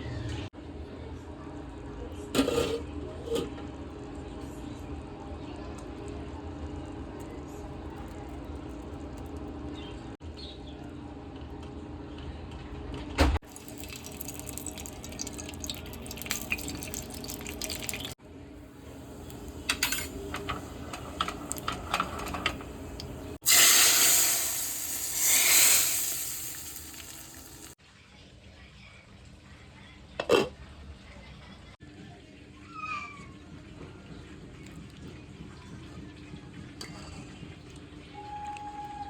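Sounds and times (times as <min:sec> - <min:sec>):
utensils clinking against pan: 0:19.1 - 0:27.7
loud hissing rush: 0:23.4 - 0:27.7.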